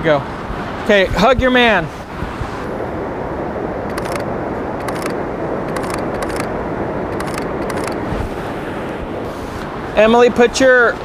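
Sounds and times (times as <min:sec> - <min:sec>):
wind: 0:00.0 - 0:11.0
camera shutter clicking: 0:03.9 - 0:06.5, 0:07.2 - 0:08.0.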